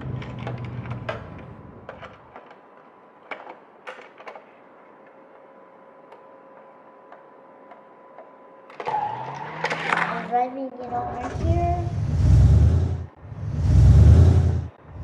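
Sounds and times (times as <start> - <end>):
toy car and packaging clicks: 3.2 - 5.2, 8.7 - 10.3.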